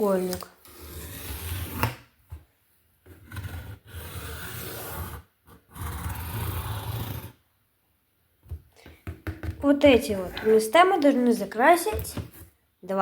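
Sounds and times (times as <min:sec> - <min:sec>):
pencil scratching on cardboard: 0:03.1 - 0:07.4.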